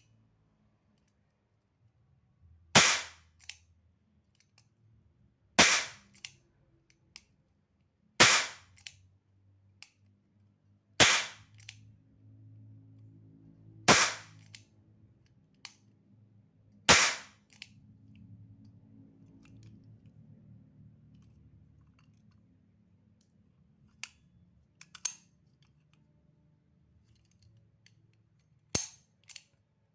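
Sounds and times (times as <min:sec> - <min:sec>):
metal mechanism clicking: 0:28.7 - 0:29.6.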